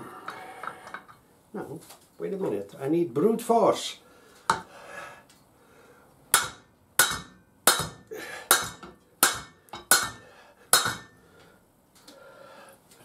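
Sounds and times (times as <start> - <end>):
hammer striking metal: 6.3 - 11.2.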